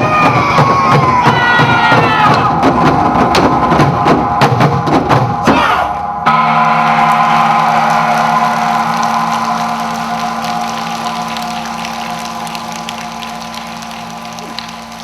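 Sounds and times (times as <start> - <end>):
drum and wood block percussion: 0.0 - 15.0
steady sustained drone: 6.0 - 15.0.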